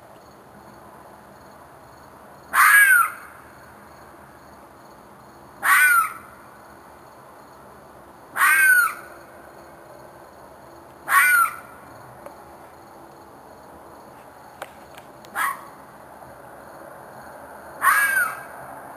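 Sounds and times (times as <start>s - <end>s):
animal screeching scream: 2.6s - 3.3s, 5.6s - 6.2s, 8.4s - 9.1s, 11.1s - 11.7s, 17.8s - 18.5s.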